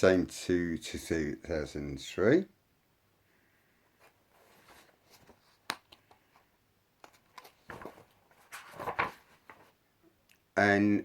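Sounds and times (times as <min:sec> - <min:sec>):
rustling scrapes: 0:04.0 - 0:05.6, 0:07.4 - 0:09.7.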